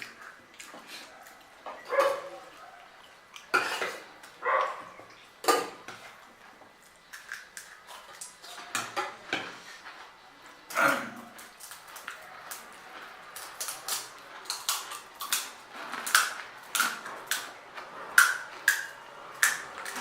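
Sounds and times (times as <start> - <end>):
crisp shells crunching while chewed: 3.0 - 8.8, 11.3 - 20.0.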